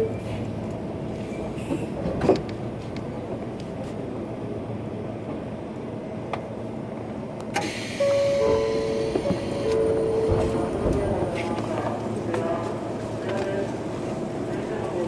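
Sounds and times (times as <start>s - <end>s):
train rail and wheel noise: 0.0s - 15.0s
train motor humming tones: 7.4s - 15.0s.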